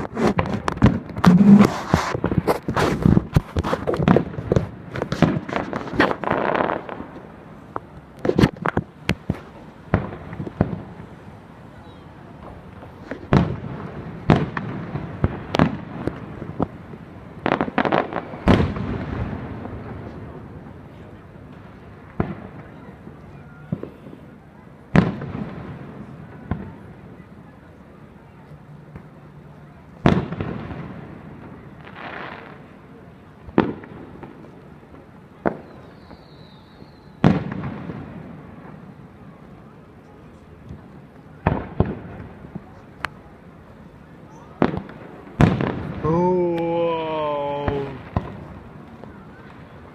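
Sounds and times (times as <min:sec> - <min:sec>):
fireworks booming: 0:00.0 - 0:27.6, 0:29.8 - 0:49.9
fireworks crackling: 0:00.0 - 0:49.9
faint thin firework whistle: 0:11.7 - 0:12.2, 0:22.6 - 0:24.3, 0:35.4 - 0:37.4.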